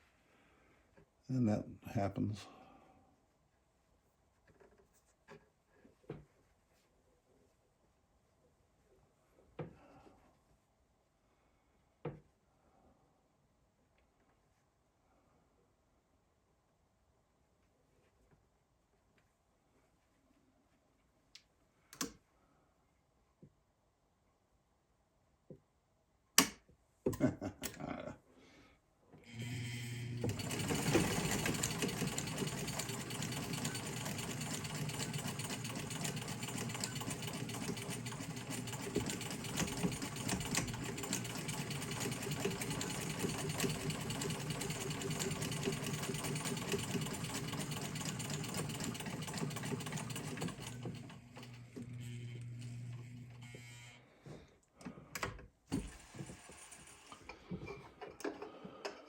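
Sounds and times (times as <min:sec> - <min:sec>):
electric sewing machine stitching: 0:29.3 - 0:54.0, 0:55.7 - 0:57.4.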